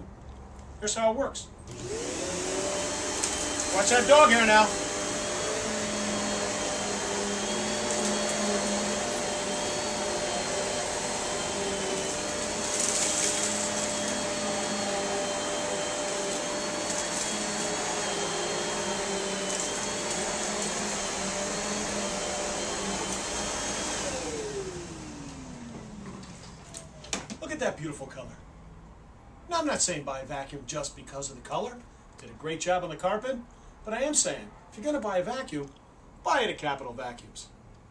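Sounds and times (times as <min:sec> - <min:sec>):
vacuum cleaner running: 0:01.7 - 0:27.3.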